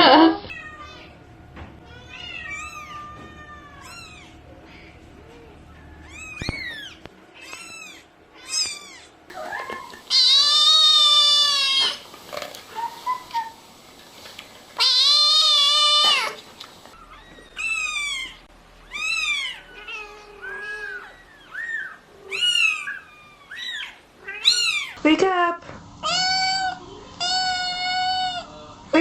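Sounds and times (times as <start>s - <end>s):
kittens mewing: 1.8s - 12.0s, 14.8s - 25.0s, 26.0s - 28.6s.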